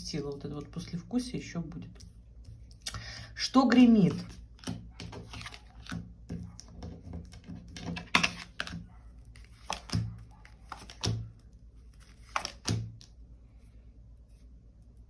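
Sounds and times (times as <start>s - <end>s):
cards clicking and tapping on table: 4.2s - 8.8s, 9.4s - 10.1s, 10.7s - 11.3s, 12.2s - 13.2s.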